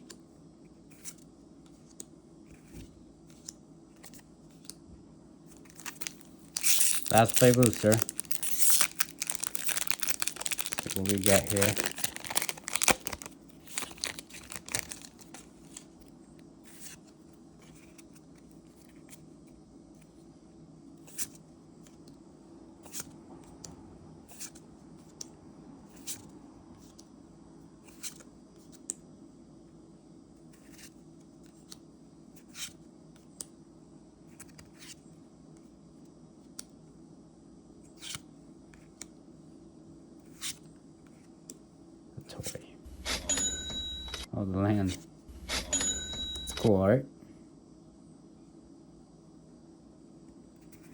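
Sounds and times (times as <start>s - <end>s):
low room hum: 0.0s - 50.9s
foil wrapper tearing: 5.6s - 15.4s.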